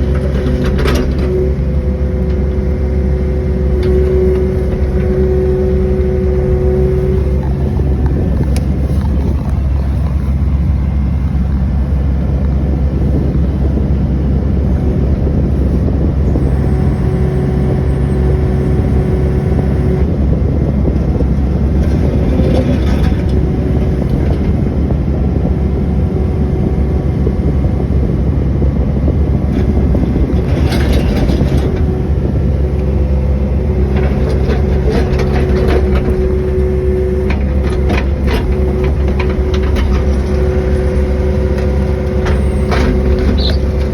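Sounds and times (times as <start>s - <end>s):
hydraulic whine: 0.0s - 12.2s, 14.7s - 20.9s, 25.8s - 43.9s
excavator engine running: 0.0s - 43.9s
scraping and clanking: 33.9s - 36.6s, 37.2s - 43.9s.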